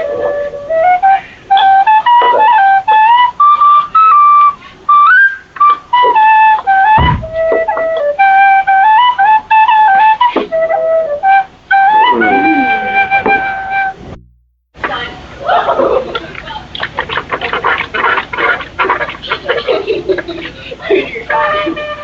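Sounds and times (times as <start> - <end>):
flute-like melody: 0.0 - 14.2, 20.9 - 22.0.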